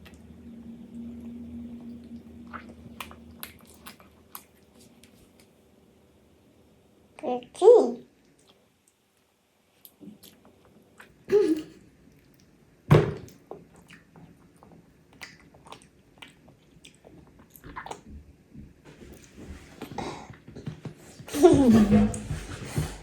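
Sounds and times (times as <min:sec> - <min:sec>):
child chewing food: 0:00.0 - 0:05.7, 0:08.2 - 0:11.3, 0:13.2 - 0:23.0.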